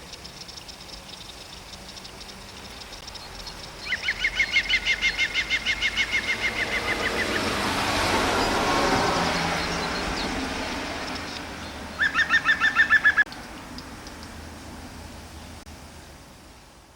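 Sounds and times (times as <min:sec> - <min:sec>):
faint high bird chirps: 0:00.0 - 0:07.5, 0:11.0 - 0:14.3.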